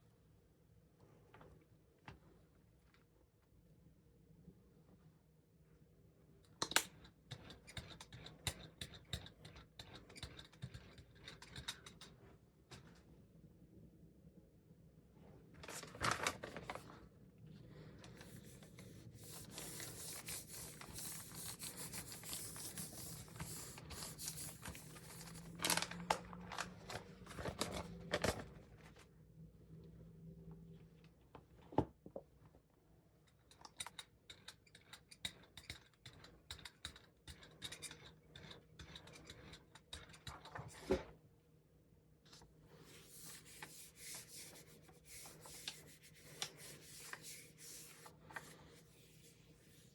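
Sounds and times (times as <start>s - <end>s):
rubbing and scratching on plate: 18.2s - 25.4s, 42.8s - 49.9s.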